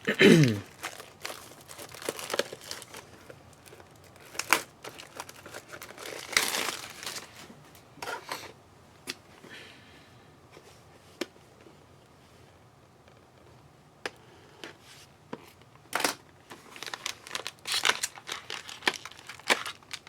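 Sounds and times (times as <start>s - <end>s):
plastic wrapping torn and crinkled: 0.6s - 7.4s, 16.0s - 20.0s.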